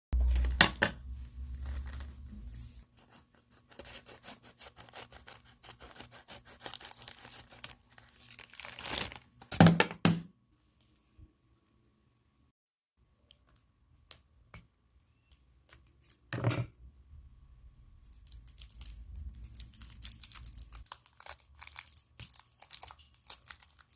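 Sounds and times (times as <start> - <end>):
packaging tearing: 4.7 - 9.5, 18.1 - 23.9
packaging crinkling: 6.4 - 9.6, 18.1 - 23.9.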